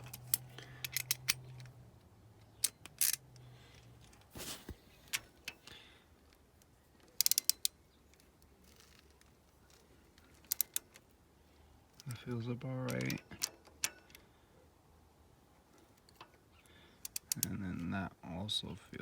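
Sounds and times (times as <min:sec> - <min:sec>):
ratchet clicking: 0:07.2 - 0:07.8.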